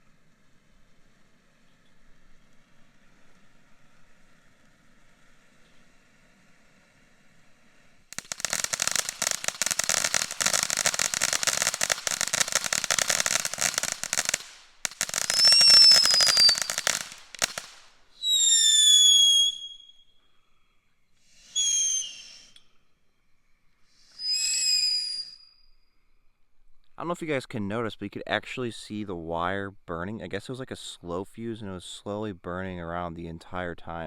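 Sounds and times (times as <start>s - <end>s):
firework crackling: 8.1s - 20.0s
firework whistles dropping in pitch: 8.2s - 20.2s, 21.5s - 22.7s, 24.1s - 25.7s.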